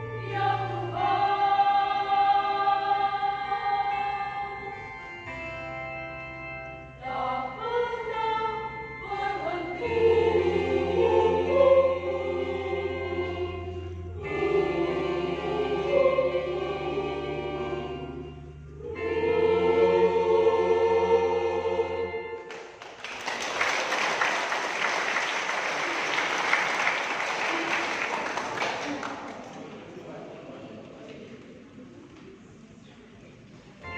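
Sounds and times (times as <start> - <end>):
choir singing: 0.0 - 4.8, 7.0 - 29.2
sustained low chords: 8.6 - 22.5
audience applauding: 22.5 - 29.8.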